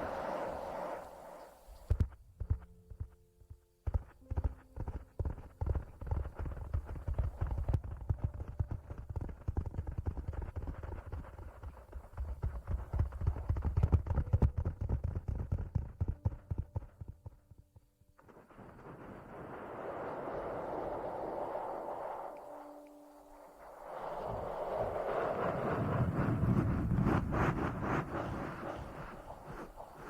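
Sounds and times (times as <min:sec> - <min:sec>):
rustling and rubbing on microphone: 0:24.2 - 0:30.0.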